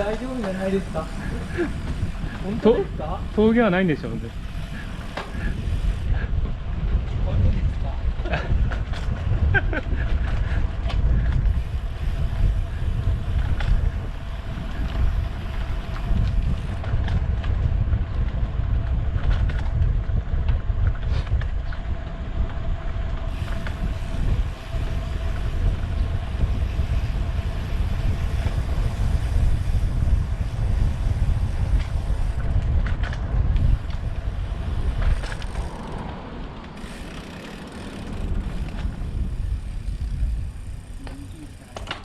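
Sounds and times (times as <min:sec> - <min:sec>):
road and tyre noise: 0:00.0 - 0:42.0
wind buffeting microphone: 0:00.0 - 0:42.0.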